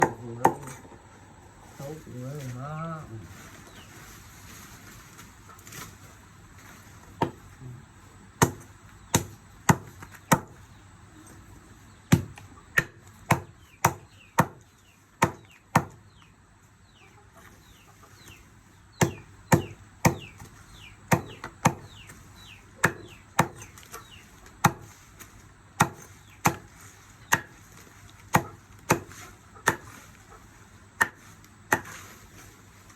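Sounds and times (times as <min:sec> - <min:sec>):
herbs chopped by hand: 0:08.4 - 0:10.6, 0:12.1 - 0:14.6, 0:15.2 - 0:16.0, 0:19.0 - 0:20.5, 0:21.1 - 0:22.2, 0:22.8 - 0:30.1, 0:30.9 - 0:32.1.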